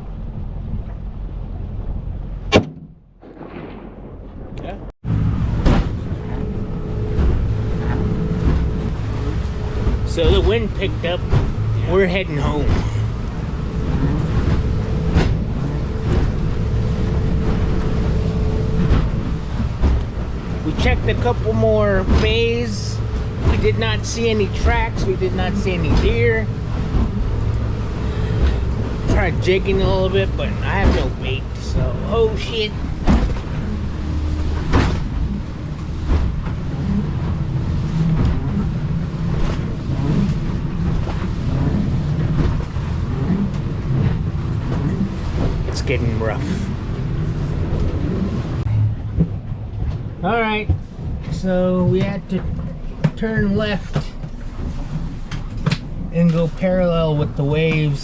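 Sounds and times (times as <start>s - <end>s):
boat engine running: 0.0s - 58.0s
hull slapping into waves: 0.0s - 58.0s
sharp knocks: 2.5s - 3.0s
wind buffeting microphone: 3.2s - 58.0s.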